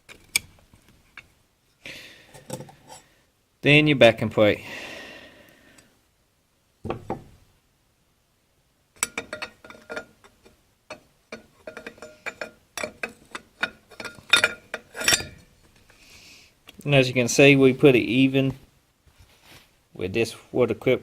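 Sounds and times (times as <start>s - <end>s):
metal plate clinking: 9.0s - 15.6s.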